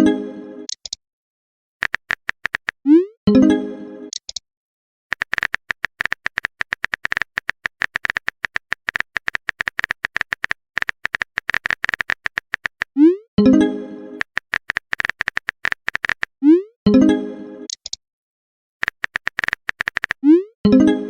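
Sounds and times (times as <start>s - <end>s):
rapid ringing clicks: 1.8s - 2.8s, 5.1s - 12.9s, 14.2s - 16.3s, 18.8s - 20.2s.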